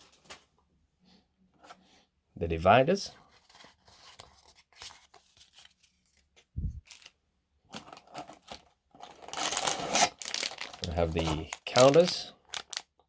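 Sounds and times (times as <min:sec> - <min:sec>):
cardboard and plastic rustling: 0:03.2 - 0:12.8.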